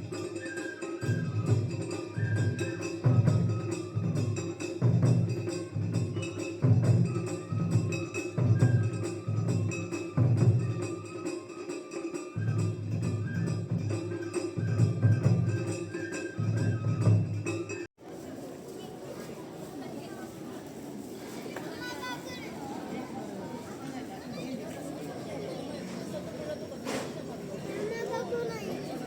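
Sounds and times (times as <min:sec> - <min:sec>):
drum and knocking percussion: 0:00.0 - 0:17.9.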